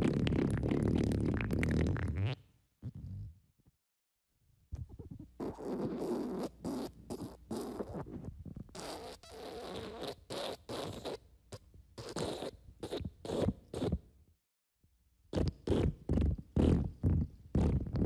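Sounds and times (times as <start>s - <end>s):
wet fart sounds: 0.0s - 3.3s, 5.0s - 11.2s, 15.4s - 18.0s.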